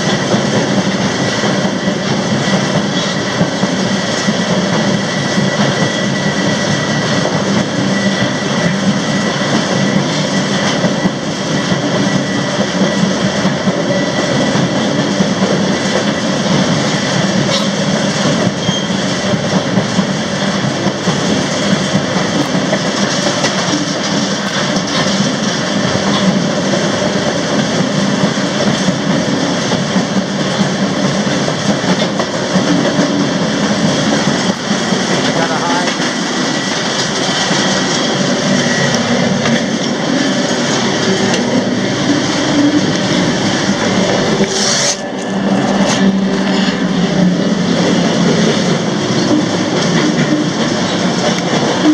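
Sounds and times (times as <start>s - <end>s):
freight train rumbling on rails: 0.0s - 51.9s.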